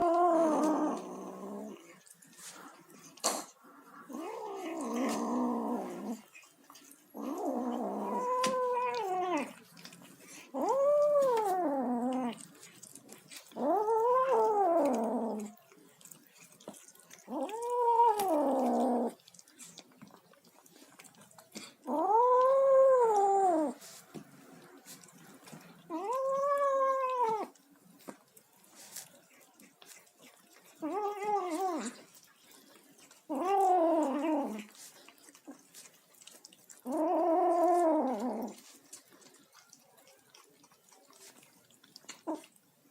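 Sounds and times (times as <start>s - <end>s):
kitten growling yowls: 0.0s - 1.8s, 4.1s - 6.2s, 7.2s - 9.6s, 10.5s - 12.4s, 13.4s - 15.6s, 17.1s - 19.3s, 21.8s - 23.8s, 25.8s - 27.6s, 30.6s - 32.0s, 33.2s - 34.7s, 36.8s - 38.8s.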